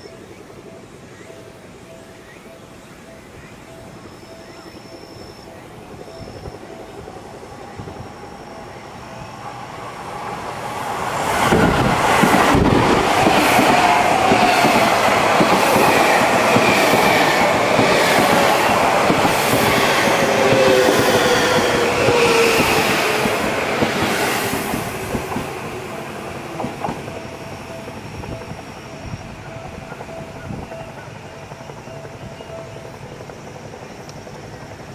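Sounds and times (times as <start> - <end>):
electric train motors whining: 0.1 - 34.9
train wheels clacking on rail joints: 10.9 - 34.9.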